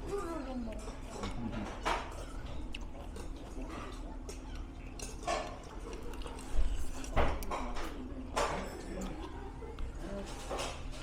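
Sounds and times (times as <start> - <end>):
noodles being slurped and chewed: 2.1 - 7.6.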